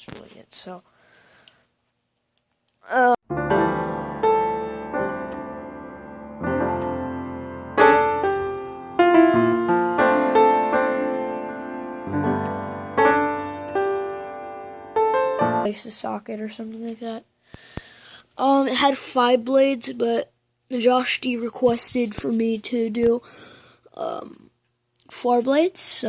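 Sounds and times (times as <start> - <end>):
piano music: 3.2 - 15.7.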